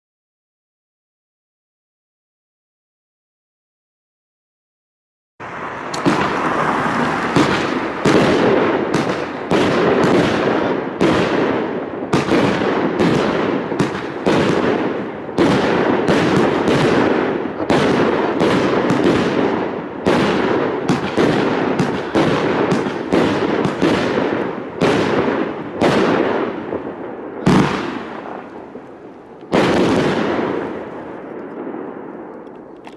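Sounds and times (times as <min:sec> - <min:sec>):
firework hiss and crackle: 0:05.4 - 0:11.5
firework bangs: 0:05.4 - 0:32.8.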